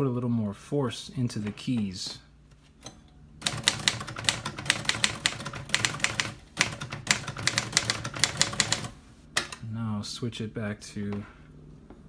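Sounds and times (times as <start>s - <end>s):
manual typewriter typing: 3.4s - 9.6s.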